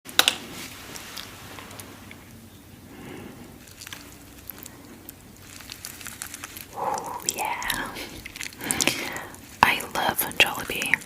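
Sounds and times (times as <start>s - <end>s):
mouth clicks and smacks: 3.6s - 11.0s.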